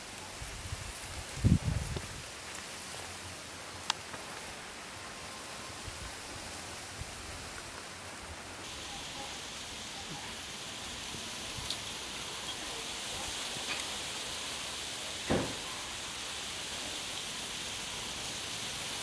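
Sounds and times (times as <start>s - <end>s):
wind hissing through bamboo: 0.0s - 19.0s
faint ticks: 3.8s - 4.5s.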